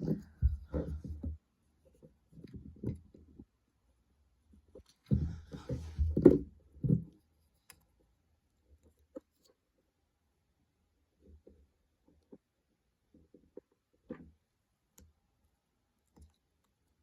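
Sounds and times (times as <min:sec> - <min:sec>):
plastic parts rubbing and knocking: 0:00.0 - 0:03.6, 0:04.7 - 0:07.3.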